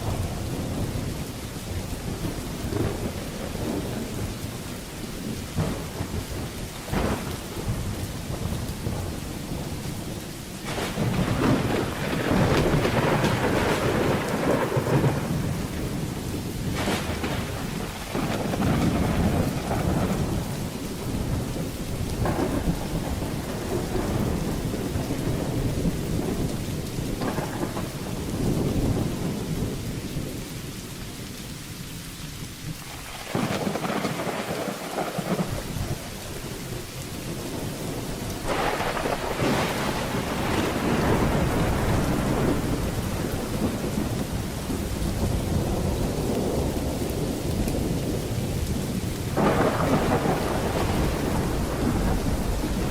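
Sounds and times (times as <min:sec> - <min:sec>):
thunder rumbling: 0:00.0 - 0:30.9, 0:32.6 - 0:52.9
steady rain: 0:00.0 - 0:52.9.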